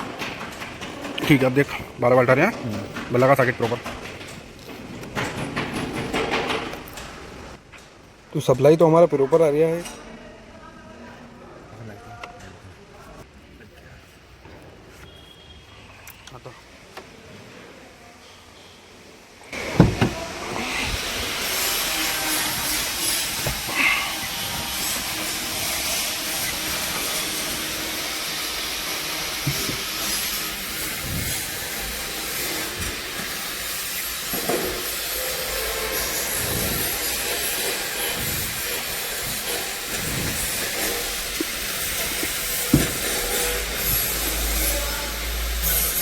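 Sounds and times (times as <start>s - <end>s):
loud hiss: 19.6s - 46.0s.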